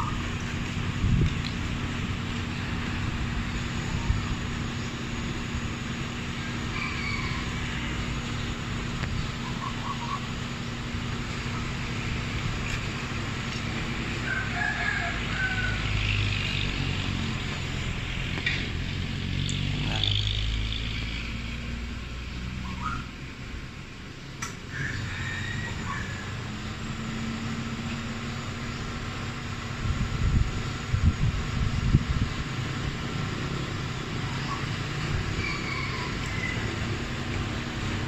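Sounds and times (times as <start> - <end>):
rooster crowing: 6.4 - 8.3, 14.1 - 16.3, 24.7 - 26.5, 35.2 - 37.1.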